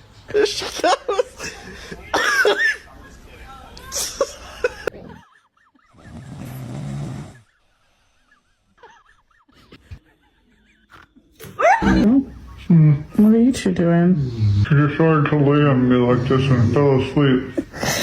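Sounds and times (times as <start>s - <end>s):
dog snoring: 5.9s - 7.5s.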